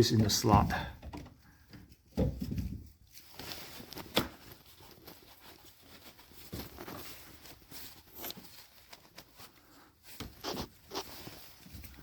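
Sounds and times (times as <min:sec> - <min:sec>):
scraping and rustling of foam: 0:02.6 - 0:12.0.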